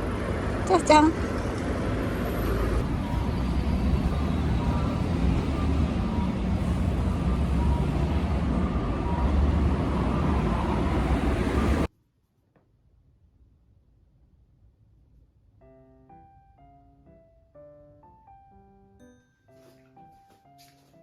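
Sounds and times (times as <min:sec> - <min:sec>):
car road noise rumble: 0:00.0 - 0:11.9.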